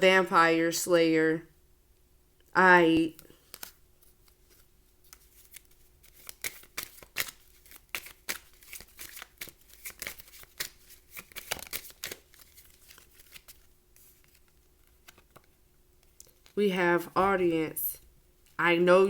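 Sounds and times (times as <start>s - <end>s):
faint steady hum: 0.0s - 19.0s
cards being shuffled: 3.2s - 16.6s.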